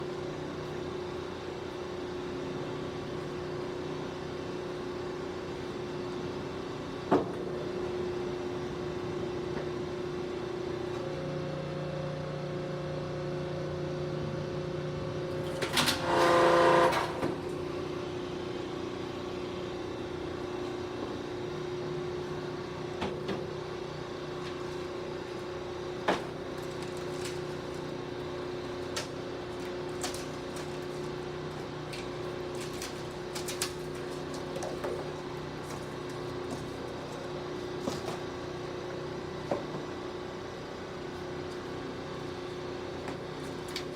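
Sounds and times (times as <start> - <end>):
industrial machine humming: 10.5 - 41.0.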